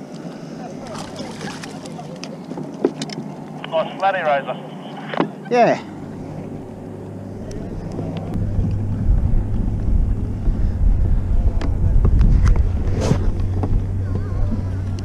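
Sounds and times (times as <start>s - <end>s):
steady low hum: 0.3s - 15.0s
wind buffeting microphone: 6.0s - 15.0s.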